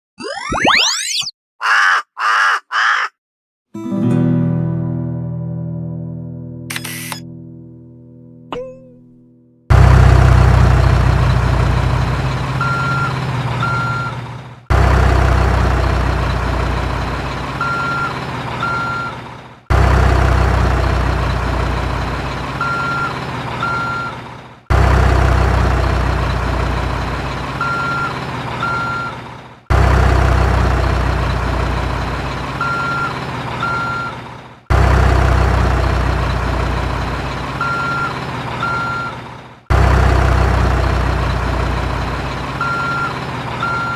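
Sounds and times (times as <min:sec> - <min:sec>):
truck engine rumble: 0:09.7 - 0:43.9.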